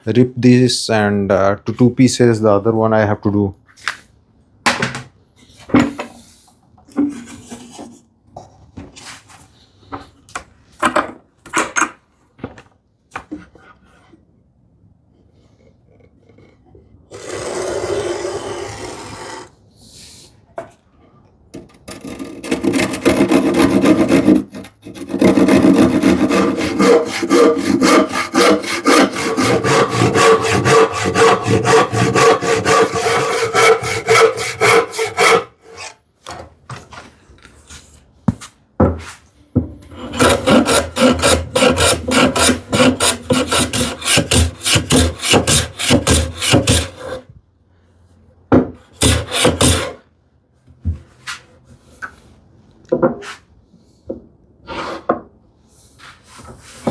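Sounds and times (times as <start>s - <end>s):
hand saw rasping through wood: 21.6s - 36.0s, 39.9s - 47.2s, 49.0s - 50.0s.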